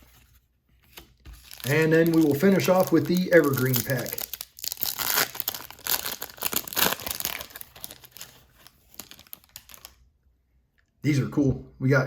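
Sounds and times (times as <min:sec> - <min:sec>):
wrapper tearing and crinkling: 0:01.4 - 0:10.0.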